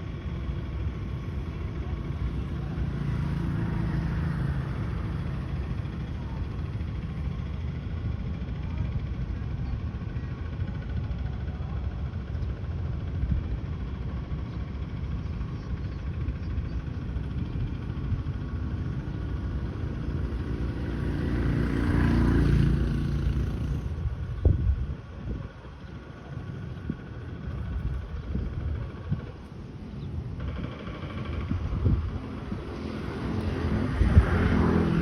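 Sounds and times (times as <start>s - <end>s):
steady low rumble: 23.2s - 35.0s
vehicle engine passing: 30.5s - 35.0s.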